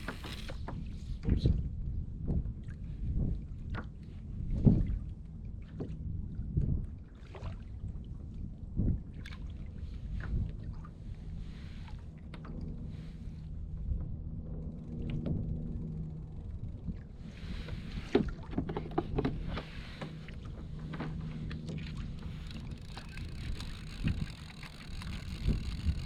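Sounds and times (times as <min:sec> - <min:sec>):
gear clicking and knocking: 0:00.0 - 0:00.7, 0:22.1 - 0:26.0
water sloshing against kayak: 0:00.0 - 0:00.8, 0:09.0 - 0:26.0
low steady hum: 0:00.0 - 0:26.0.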